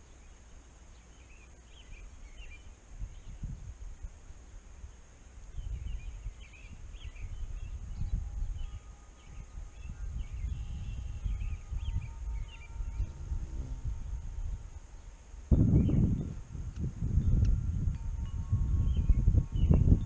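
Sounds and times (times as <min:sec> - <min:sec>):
small birds chirping: 0:00.0 - 0:03.6
low rumble: 0:11.7 - 0:14.9.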